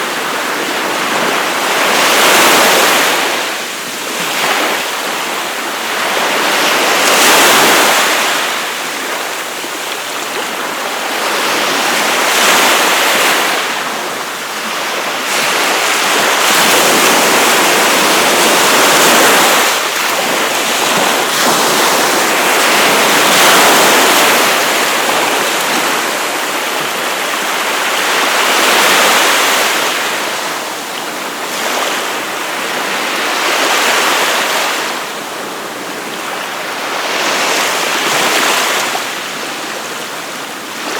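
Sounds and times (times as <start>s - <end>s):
waves breaking on a beach: 0.0s - 40.9s.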